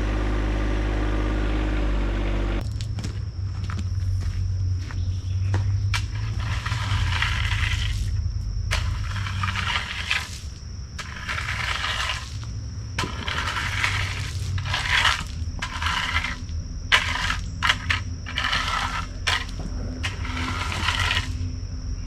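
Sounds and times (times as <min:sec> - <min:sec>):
tractor engine running: 0:00.0 - 0:04.9
gravel crunching and scraping: 0:02.6 - 0:22.0.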